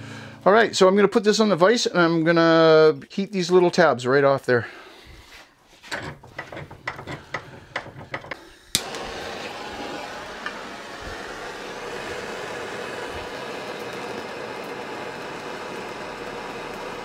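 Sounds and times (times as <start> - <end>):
heat gun hissing: 8.4 - 17.0.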